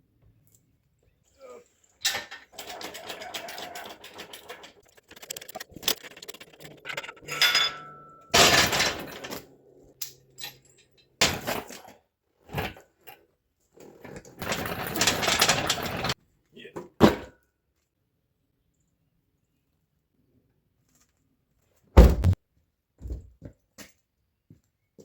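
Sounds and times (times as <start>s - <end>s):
metal tools clinking and clattering: 2.0s - 12.0s, 14.4s - 16.2s
metal scraping: 2.1s - 9.5s.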